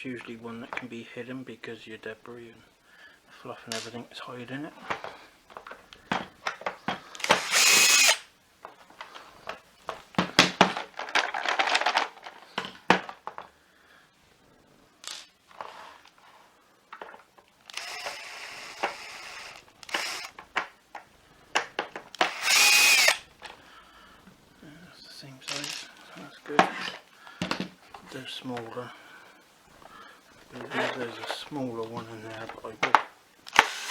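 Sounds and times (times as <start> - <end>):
screws and plastic parts clattering: 4.8 - 8.3, 8.9 - 13.5, 16.9 - 23.6, 25.5 - 26.0, 30.6 - 33.9
electric screwdriver running: 7.2 - 8.3, 17.7 - 20.4, 22.2 - 23.2, 33.5 - 33.9.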